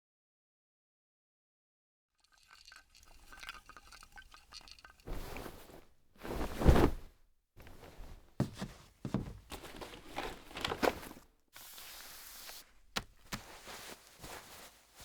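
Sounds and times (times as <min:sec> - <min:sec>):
knocks and scuffs: 0:05.1 - 0:11.2.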